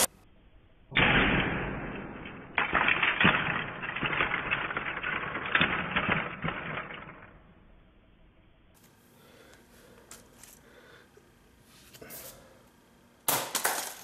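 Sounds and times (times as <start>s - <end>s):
plastic toy crashing on ground: 0.9s - 7.4s, 13.3s - 14.0s.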